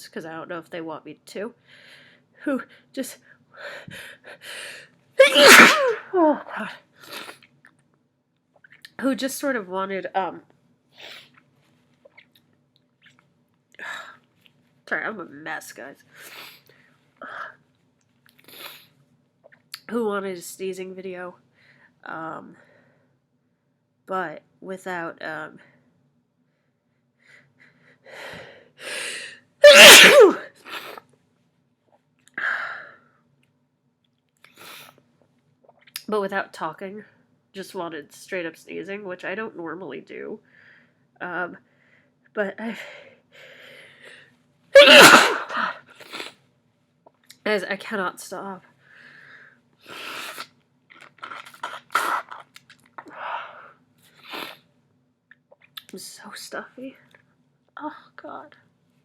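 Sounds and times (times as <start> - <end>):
loud sneeze with voiced cry: 5.2 - 6.5, 29.6 - 31.0, 44.8 - 46.3, 51.7 - 52.3
person sniffling through stuffy nose: 18.5 - 18.9, 34.5 - 35.0, 44.8 - 46.4, 49.8 - 50.5, 54.1 - 54.7
soft breath: 48.8 - 50.1.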